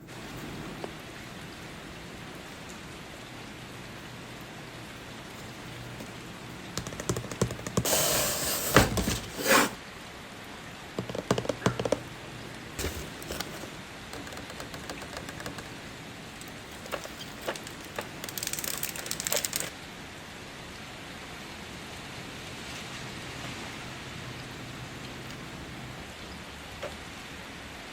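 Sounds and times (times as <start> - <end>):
steady rain: 0.0 - 8.4, 13.7 - 27.9
small plastic clicks and taps: 6.8 - 7.9, 11.0 - 12.0, 14.2 - 15.8
packaging rustling: 6.8 - 9.8, 11.0 - 15.8, 16.4 - 19.7.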